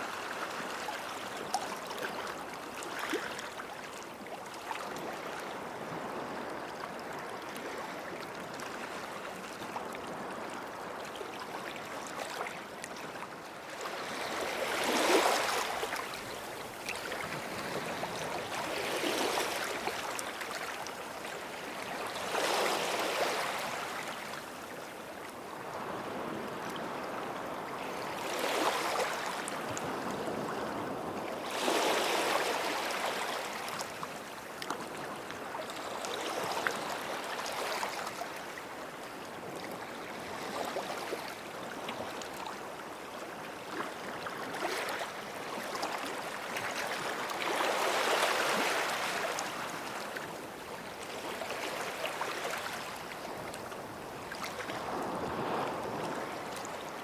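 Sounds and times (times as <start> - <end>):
sea waves breaking on shore: 13.7 - 24.9, 25.6 - 38.6, 43.6 - 57.0.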